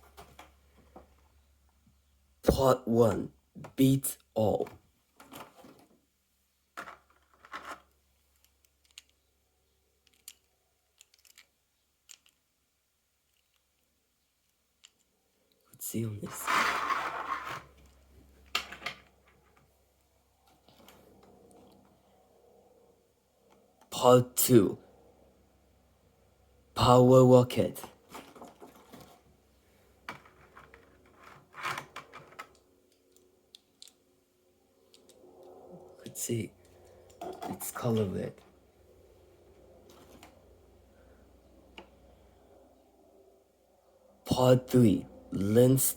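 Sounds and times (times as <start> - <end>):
toy car click: 8.8 - 9.2, 10.0 - 12.4.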